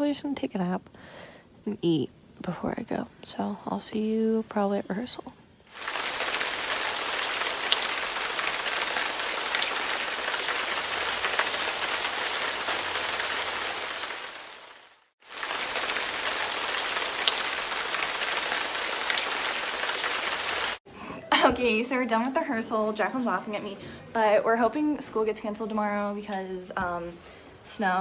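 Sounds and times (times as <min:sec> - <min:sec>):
steady rain: 0:05.7 - 0:20.8.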